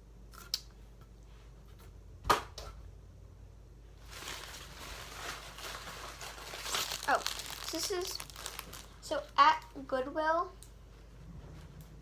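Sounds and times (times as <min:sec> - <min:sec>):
bag rustling: 0:04.0 - 0:09.0.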